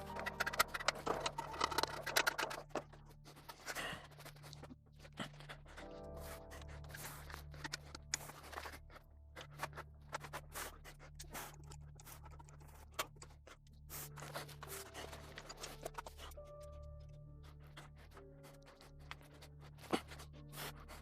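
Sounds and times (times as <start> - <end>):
hand tools clicking on metal: 0.0 - 2.8
low droning background music: 0.0 - 21.0.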